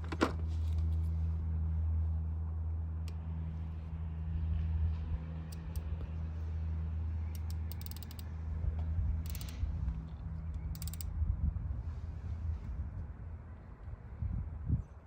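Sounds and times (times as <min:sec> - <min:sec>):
ratchet wrench clicking: 0:05.5 - 0:05.9, 0:07.2 - 0:08.3, 0:09.2 - 0:09.6, 0:10.5 - 0:11.1.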